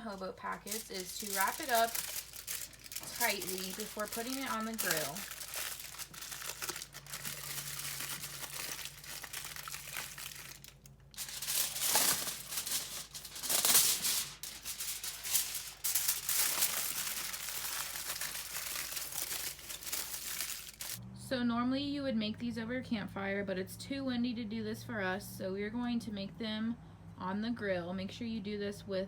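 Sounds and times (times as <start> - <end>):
aluminium foil crinkling: 0.0 - 21.0.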